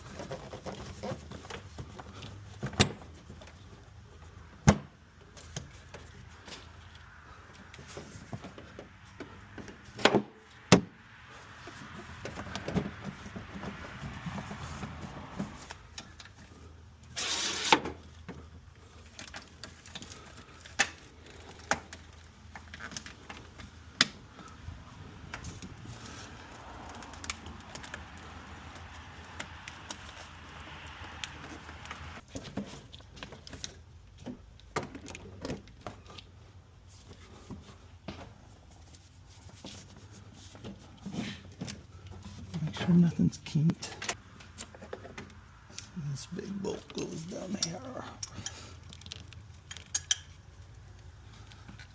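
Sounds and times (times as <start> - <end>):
tools and metal parts clanking: 47.1 - 50.4.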